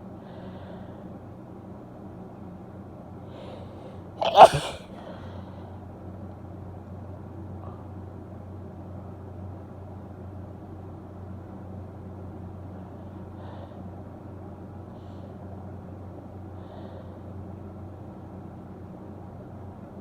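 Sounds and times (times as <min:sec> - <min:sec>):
woman sneezing: 0:04.2 - 0:04.8.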